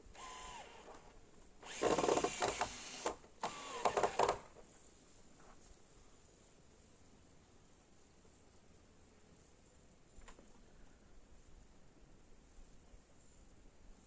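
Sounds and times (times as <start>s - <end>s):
small power tool whining: 0.1s - 4.5s.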